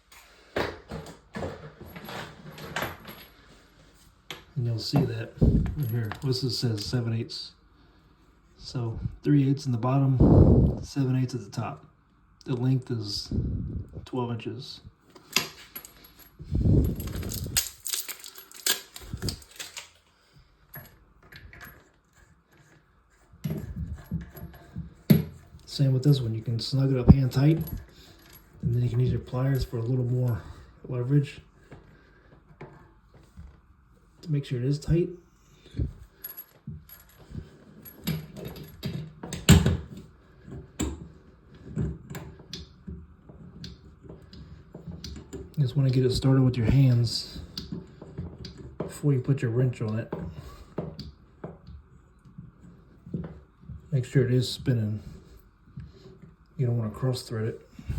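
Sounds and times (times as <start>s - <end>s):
clicks and metallic rattles of fittings: 15.1s - 20.0s.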